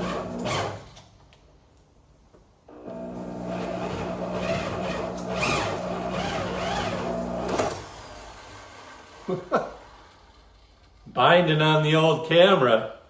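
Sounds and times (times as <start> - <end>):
drill motor running: 0.0 - 0.9, 2.8 - 7.8
wire scraping: 0.0 - 1.0, 3.4 - 7.8.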